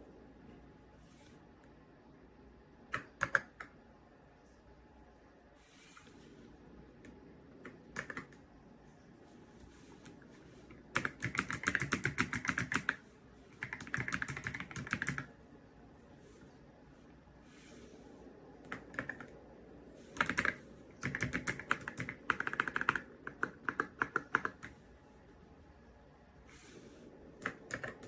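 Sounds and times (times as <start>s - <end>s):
mechanical keyboard typing: 2.9s - 3.7s, 7.6s - 8.4s, 10.7s - 15.3s, 18.6s - 19.4s, 20.1s - 24.8s, 27.4s - 28.0s.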